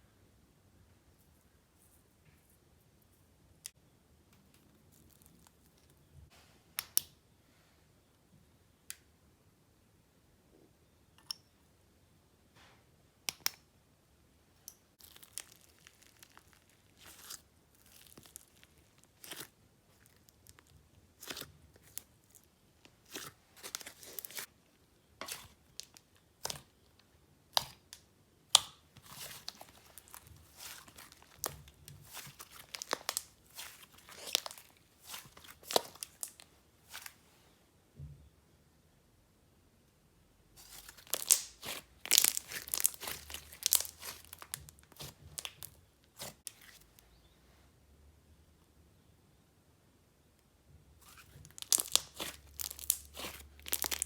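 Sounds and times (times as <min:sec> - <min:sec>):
slime squished by hand: 0:15.0 - 0:24.5, 0:25.2 - 0:26.8, 0:27.5 - 0:37.2, 0:40.6 - 0:47.0, 0:51.0 - 0:54.0.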